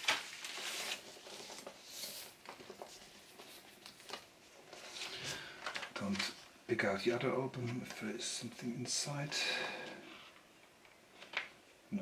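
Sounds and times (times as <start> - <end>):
paper and cardboard rustling: 0.0 - 6.4.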